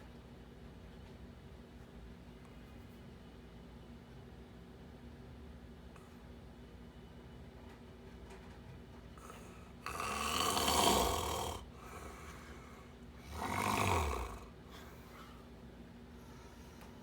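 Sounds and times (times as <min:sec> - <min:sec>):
person snoring: 0:09.2 - 0:12.6, 0:13.2 - 0:14.9.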